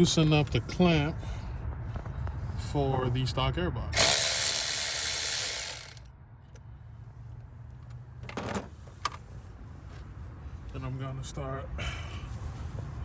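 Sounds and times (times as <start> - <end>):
electric ratchet running: 4.0 - 6.1.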